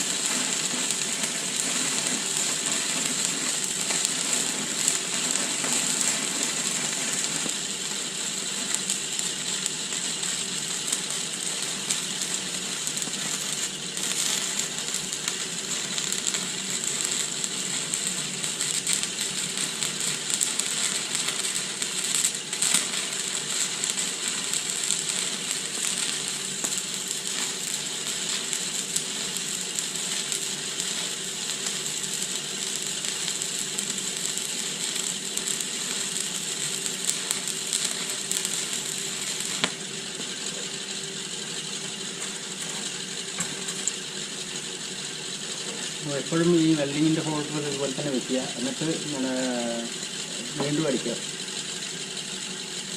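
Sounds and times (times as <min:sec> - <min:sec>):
welding arc crackling and sizzling: 0:00.0 - 0:52.9.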